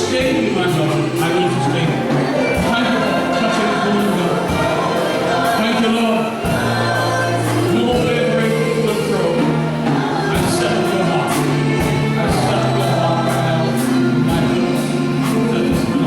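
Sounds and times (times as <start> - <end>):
held bass notes: 0.0 - 16.0
steady drum beat: 0.0 - 16.0
voices singing: 0.0 - 16.0.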